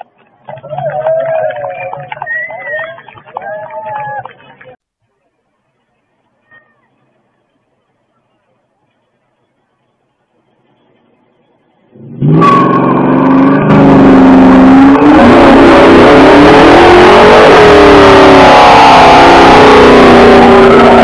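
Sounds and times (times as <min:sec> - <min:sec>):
car engine revving hard: 0:12.0 - 0:21.0.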